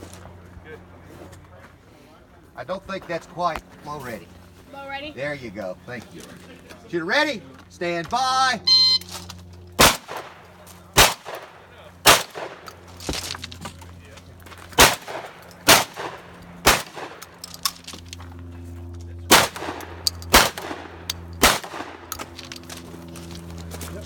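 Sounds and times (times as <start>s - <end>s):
shotgun shots: 9.8s - 12.8s, 14.8s - 17.4s, 19.3s - 22.1s.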